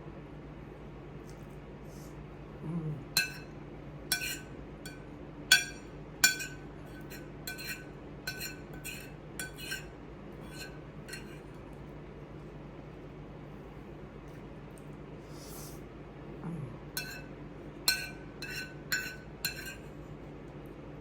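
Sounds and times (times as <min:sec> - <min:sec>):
utensil clinking against dish: 0:03.2 - 0:11.6, 0:17.0 - 0:19.9.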